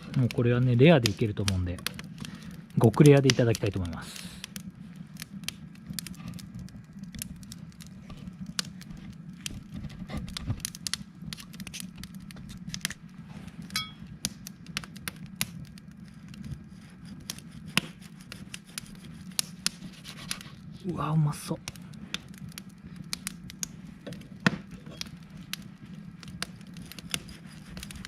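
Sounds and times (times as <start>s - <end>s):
steady low hum: 0.0s - 28.0s
wood fire crackling: 0.0s - 28.0s
metallic clink: 13.8s - 14.0s.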